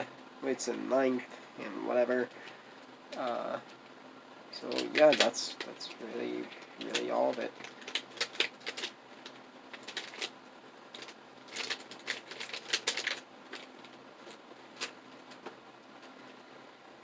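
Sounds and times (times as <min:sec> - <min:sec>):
plastic puzzle cube layers clicking: 0:06.8 - 0:10.3, 0:10.9 - 0:14.9.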